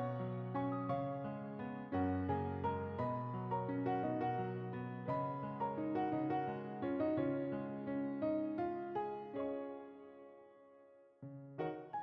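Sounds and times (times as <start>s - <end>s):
soft piano melody: 0.0s - 12.0s.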